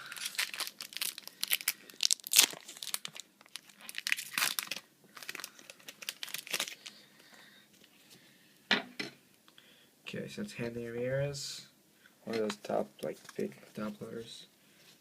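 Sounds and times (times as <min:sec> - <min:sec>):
card pack wrapper crinkling: 0:00.0 - 0:07.0.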